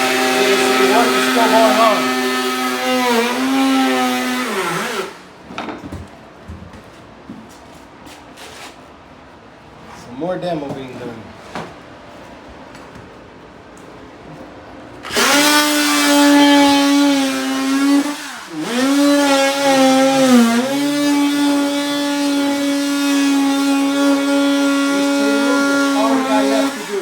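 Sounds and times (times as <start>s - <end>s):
electric power tool running: 0.0s - 5.3s, 15.0s - 27.0s.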